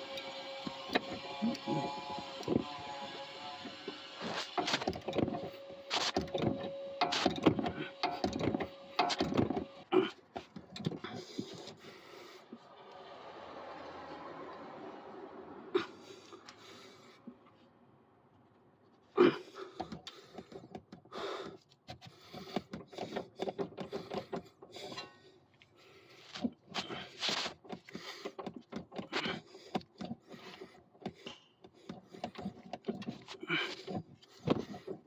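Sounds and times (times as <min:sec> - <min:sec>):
tool clicks knocks and scraping: 0:00.1 - 0:11.8, 0:19.7 - 0:25.3, 0:26.3 - 0:35.0.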